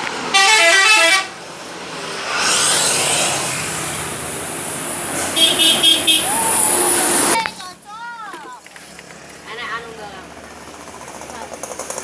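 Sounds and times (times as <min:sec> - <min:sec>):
vehicle passing: 0:01.3 - 0:12.0
horn beeping rapidly: 0:05.4 - 0:06.4.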